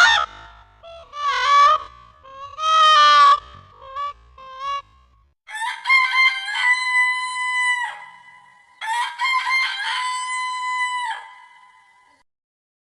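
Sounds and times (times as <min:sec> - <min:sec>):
rooster crowing: 0:05.5 - 0:11.8.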